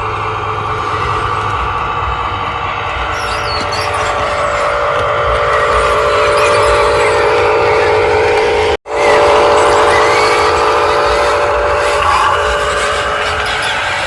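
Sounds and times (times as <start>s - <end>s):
toy electric motors whirring: 2.9s - 14.0s.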